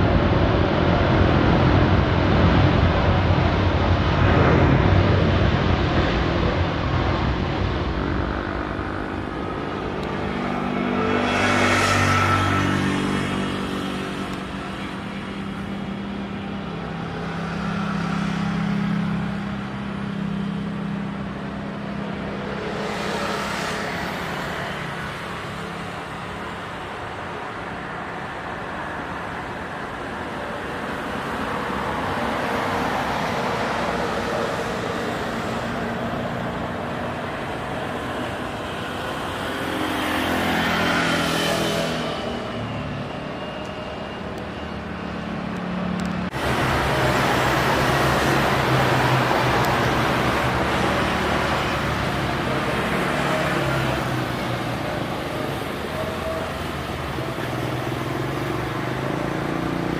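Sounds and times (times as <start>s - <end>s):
road traffic noise: 0.0s - 59.9s
vehicles passing close by: 0.0s - 59.9s.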